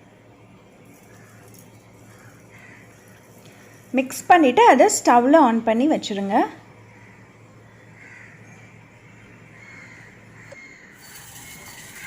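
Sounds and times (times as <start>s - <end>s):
low steady hum: 0.0s - 12.0s
crows cawing: 1.0s - 3.9s, 6.9s - 8.8s, 9.5s - 11.0s.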